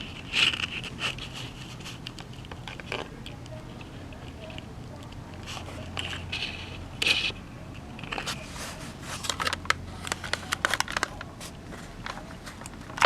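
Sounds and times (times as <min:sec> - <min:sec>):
plastic clock handled clicks: 0:09.2 - 0:13.0.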